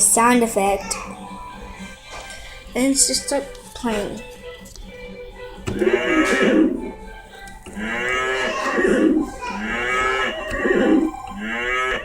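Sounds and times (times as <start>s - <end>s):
electronic keyboard cow moo: 5.7s - 7.0s, 7.7s - 12.0s.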